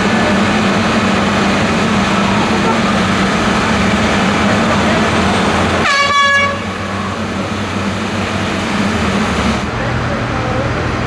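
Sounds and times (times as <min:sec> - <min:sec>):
heavy machinery engines running: 0:00.0 - 0:11.0
vehicle horn toot: 0:05.4 - 0:07.6.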